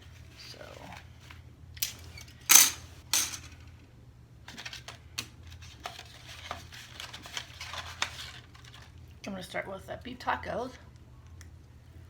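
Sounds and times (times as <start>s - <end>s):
silverware clicking and clinking: 1.8s - 3.5s
packaging rustling: 4.5s - 9.0s.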